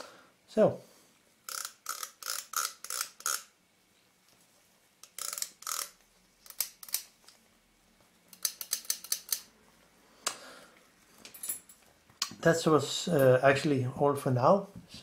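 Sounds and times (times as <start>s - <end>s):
small mechanical lens clicks: 1.5s - 3.5s, 5.0s - 7.1s.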